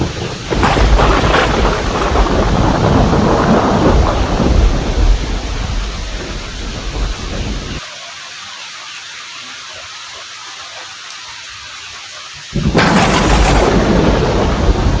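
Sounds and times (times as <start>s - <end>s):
thunderclap rumbling: 0.0s - 7.8s, 12.5s - 15.0s
rain hissing: 0.0s - 15.0s.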